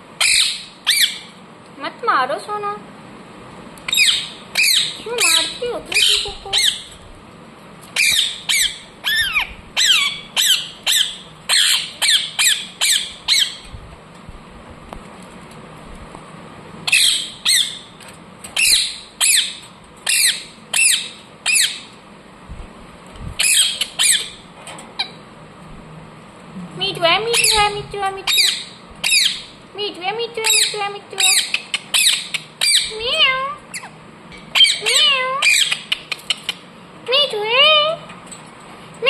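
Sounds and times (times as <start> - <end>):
parrot squawking: 0.2 - 1.3, 3.9 - 7.0, 8.0 - 13.6, 16.8 - 17.9, 18.6 - 21.9, 23.4 - 24.4, 27.1 - 29.6, 30.4 - 36.6.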